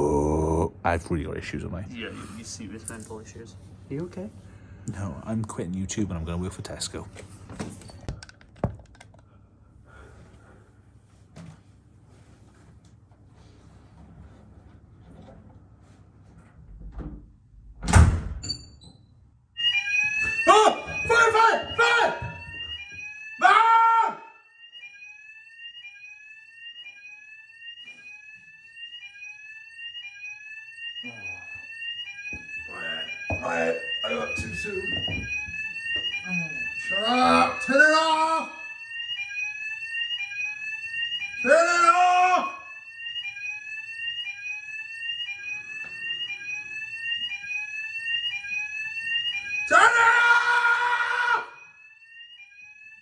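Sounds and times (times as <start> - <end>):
fire alarm rising sweep tone: 18.4 - 53.0.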